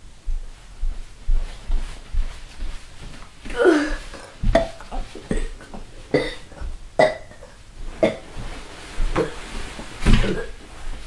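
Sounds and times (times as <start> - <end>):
person burping: 3.5 - 8.2, 10.2 - 10.6.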